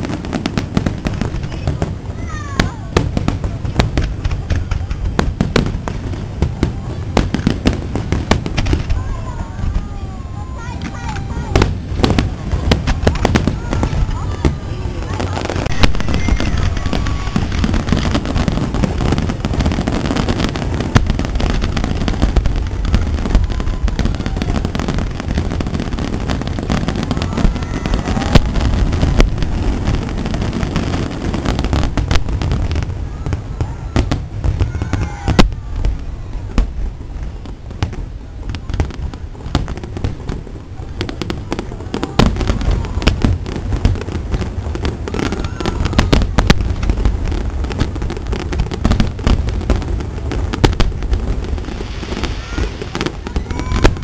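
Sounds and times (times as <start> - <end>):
fireworks booming and crackling: 0.0 - 54.0.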